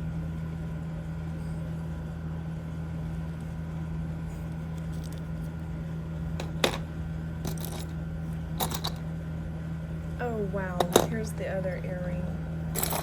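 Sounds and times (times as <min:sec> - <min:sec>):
low room hum: 0:00.0 - 0:13.0
jewelry pieces clinking: 0:07.4 - 0:07.9, 0:08.6 - 0:09.0, 0:12.7 - 0:13.0.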